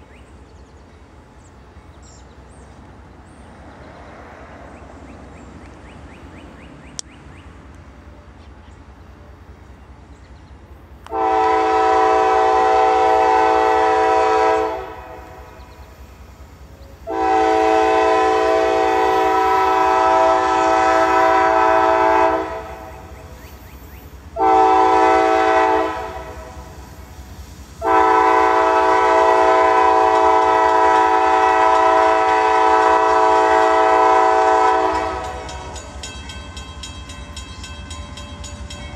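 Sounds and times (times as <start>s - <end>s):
train rumble: 0.0s - 38.9s
locomotive air horn blasts: 11.0s - 15.7s, 17.0s - 23.2s, 24.3s - 27.1s, 27.8s - 35.8s.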